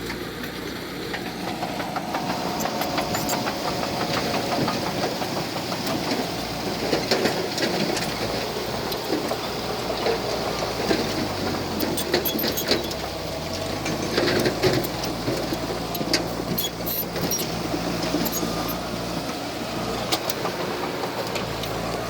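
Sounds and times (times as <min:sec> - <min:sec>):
low diesel engine drone: 0:00.0 - 0:22.0
metal and rock clanking: 0:01.1 - 0:18.8.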